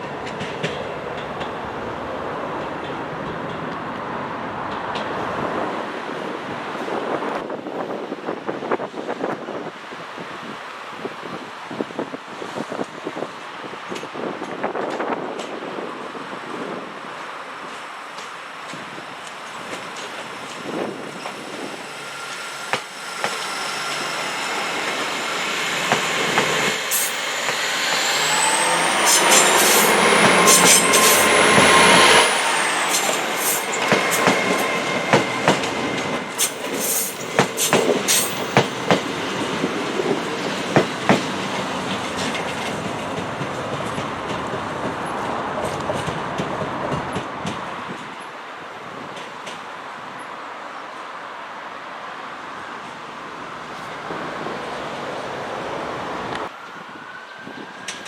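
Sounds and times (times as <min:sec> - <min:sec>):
wheels clacking over rail joints: 0:00.0 - 0:04.0, 0:17.2 - 0:48.3
train passing: 0:00.0 - 0:08.8, 0:12.5 - 0:58.0.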